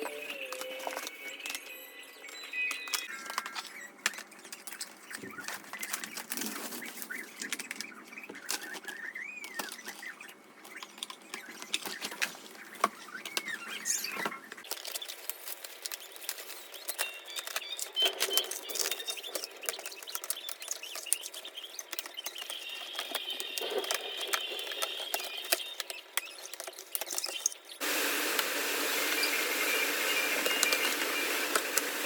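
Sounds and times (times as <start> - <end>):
plastic packaging rustling: 2.7 - 28.3.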